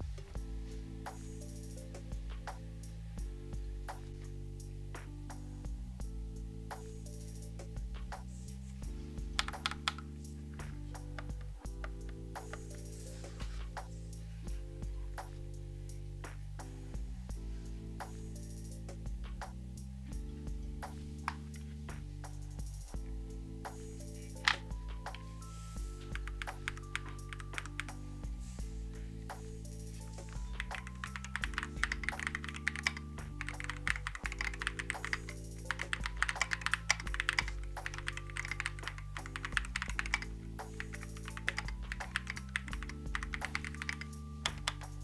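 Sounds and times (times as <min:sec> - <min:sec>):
background music with low notes: 0:00.0 - 0:45.0
mechanical keyboard key clacks: 0:24.4 - 0:24.7, 0:30.6 - 0:44.9.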